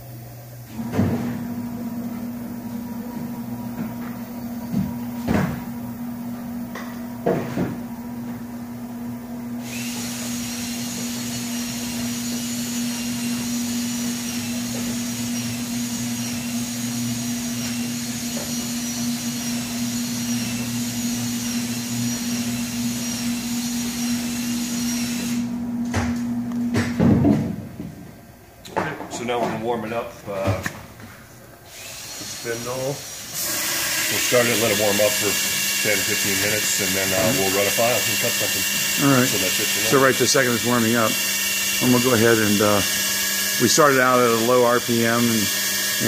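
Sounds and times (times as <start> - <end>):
router machine humming: 9.4 - 27.0, 31.7 - 46.0.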